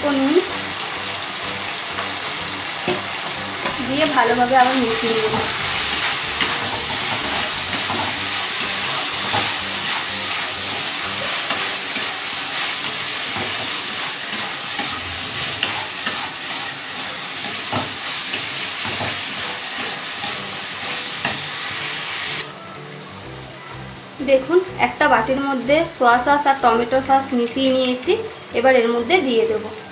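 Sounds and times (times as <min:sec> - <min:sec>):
vegetables sizzling in hot oil: 0:00.0 - 0:29.9
spatula scraping pan: 0:02.8 - 0:22.4.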